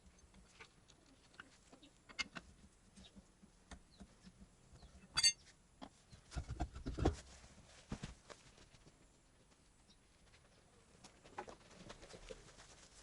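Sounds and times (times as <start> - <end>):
ringing metallic clink: 5.2 - 5.4.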